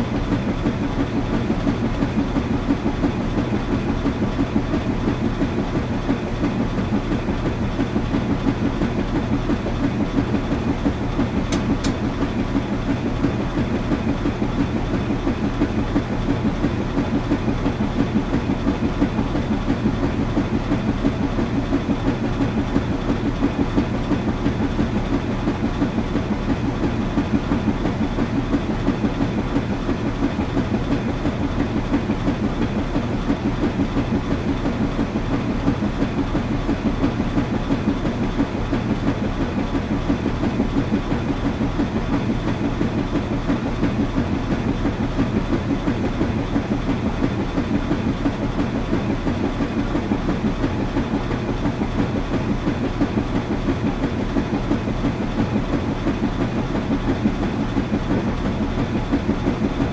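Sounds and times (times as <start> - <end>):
washing machine running: 0.0 - 59.9.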